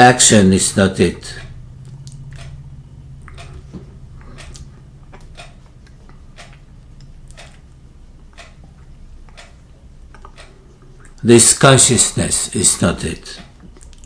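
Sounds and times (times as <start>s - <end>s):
low steady hum: 0.0s - 14.0s
soft regular ticks: 1.4s - 2.6s, 3.2s - 11.2s.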